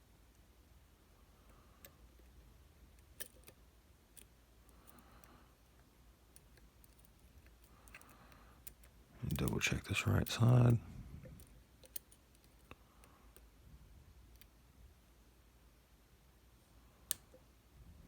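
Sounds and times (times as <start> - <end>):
lock pick clicking and scraping: 3.0 - 4.3, 6.3 - 9.6, 11.8 - 12.7.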